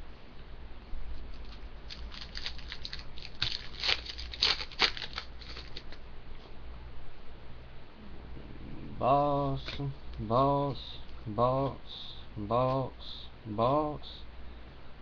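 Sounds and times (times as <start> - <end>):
trading cards rustling and flicking: 1.1 - 6.0.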